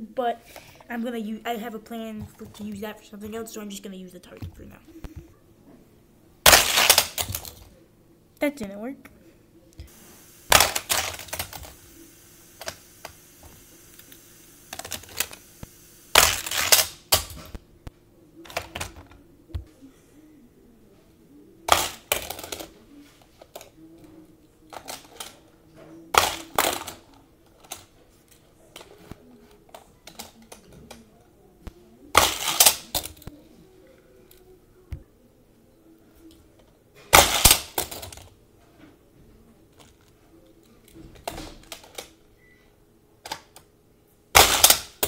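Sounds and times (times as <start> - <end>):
toy cars rattling on plastic track: 6.5 - 7.6, 10.5 - 11.8, 14.7 - 15.4, 16.2 - 17.3, 24.7 - 25.4, 26.2 - 27.9, 37.2 - 38.3.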